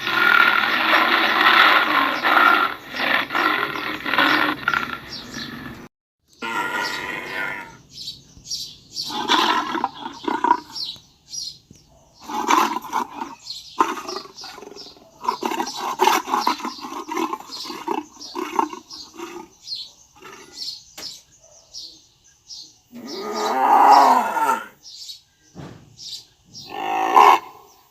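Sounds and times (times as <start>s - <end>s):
tiger roaring and grunting: 0.0s - 7.8s, 9.0s - 10.9s, 12.2s - 20.7s, 22.9s - 24.8s, 26.6s - 27.6s.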